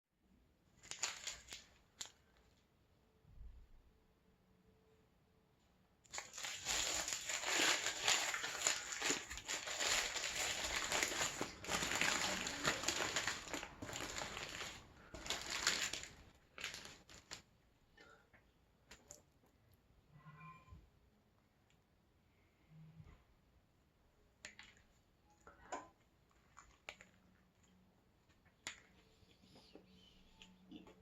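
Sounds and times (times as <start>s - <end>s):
paper wrapper crinkling: 0.8s - 2.6s, 6.1s - 17.5s.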